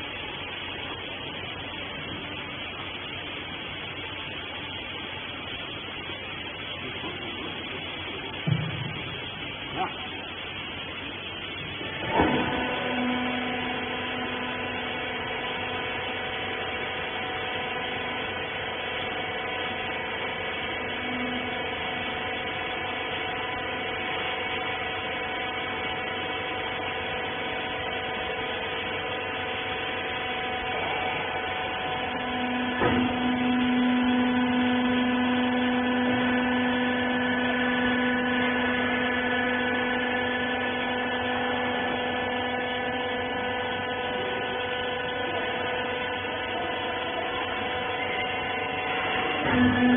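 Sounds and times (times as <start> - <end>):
baler motor and pump hum: 0.0 - 49.9
machine knock: 8.4 - 9.2.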